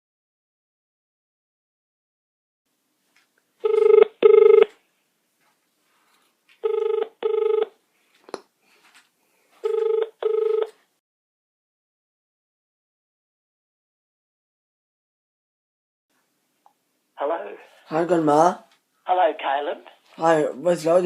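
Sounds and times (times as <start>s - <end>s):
cordless phone ringing: 3.6s - 4.7s, 6.6s - 7.8s, 9.6s - 10.8s.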